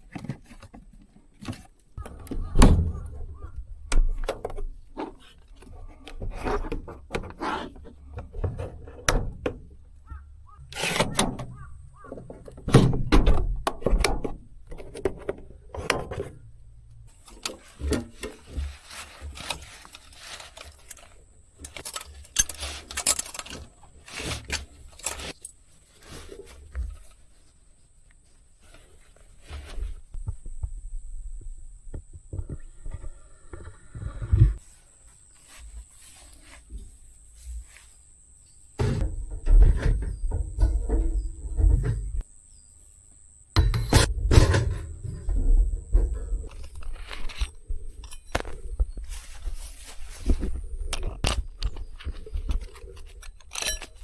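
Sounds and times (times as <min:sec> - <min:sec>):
camping gear knocking and clattering: 0:00.0 - 0:10.2, 0:10.9 - 0:27.3, 0:38.7 - 0:42.3, 0:43.5 - 0:54.0.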